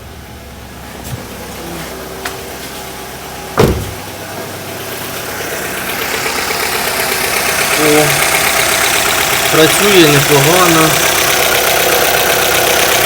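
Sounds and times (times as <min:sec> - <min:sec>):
car engine idling: 0:00.0 - 0:13.0
loud thump: 0:03.6 - 0:04.1.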